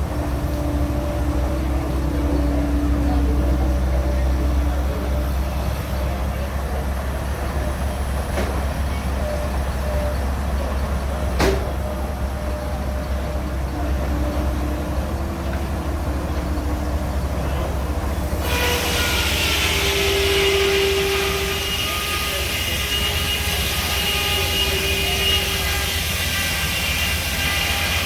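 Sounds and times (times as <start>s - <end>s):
sawmill drive rumbling: 0.0s - 28.0s
saw blade hissing and whining: 18.3s - 28.0s.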